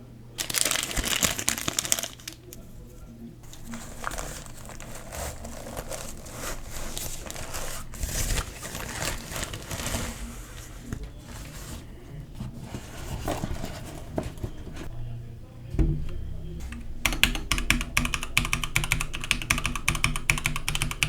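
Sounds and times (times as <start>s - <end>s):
plastic and paper crinkling: 0.4s - 14.9s.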